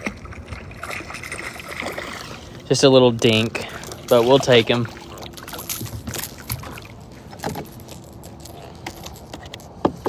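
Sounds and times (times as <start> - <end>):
tackle clicks and rattles: 5.3 - 10.0.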